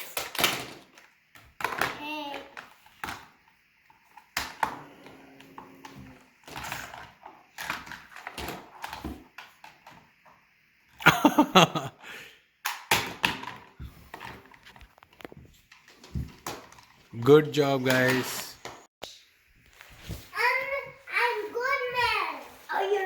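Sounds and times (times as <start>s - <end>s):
plastic toys clattering together: 0.0s - 3.4s, 5.8s - 10.0s, 12.6s - 17.1s.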